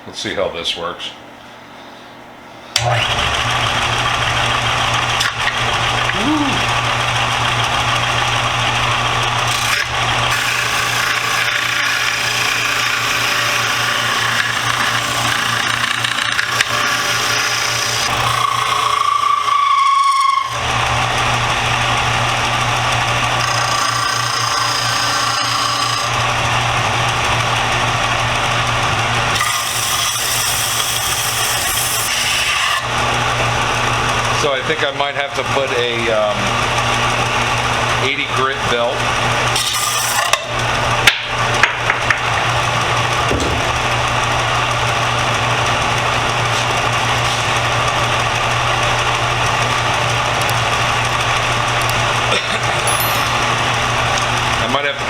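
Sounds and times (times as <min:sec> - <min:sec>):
belt sander motor hum: 0:02.8 - 0:55.0
wood rasping on sanding belt: 0:23.4 - 0:26.1.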